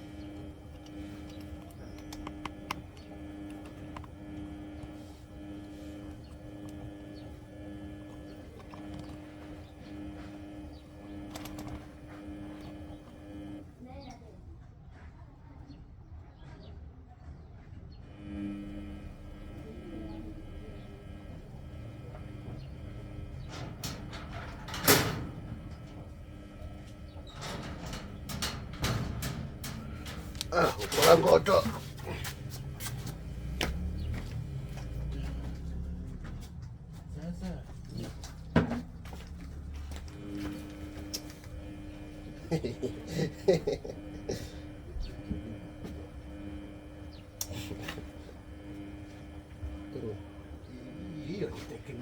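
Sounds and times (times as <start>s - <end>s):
steady low hum: 0.0s - 14.0s, 18.0s - 52.0s
hard parts clicking and knocking: 18.8s - 35.7s.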